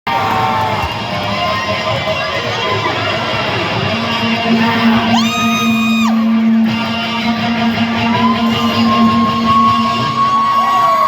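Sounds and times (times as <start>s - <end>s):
electric guitar through pa: 0.1s - 11.0s
held low note: 4.2s - 10.4s
brief rising and falling high tone: 4.5s - 11.0s.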